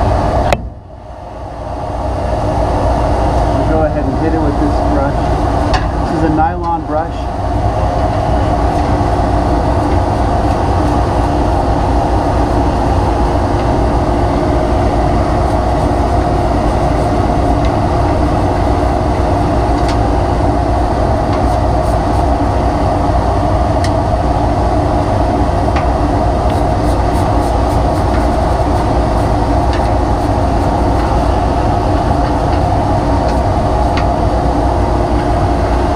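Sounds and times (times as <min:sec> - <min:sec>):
vacuum running: 0:00.0 - 0:35.9
sawdust being brushed: 0:26.5 - 0:31.1.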